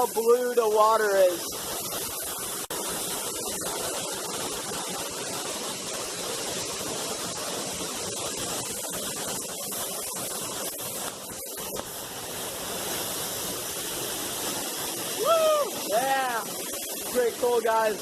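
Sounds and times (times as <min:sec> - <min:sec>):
waterfall rushing into a pool: 0:00.0 - 0:18.0.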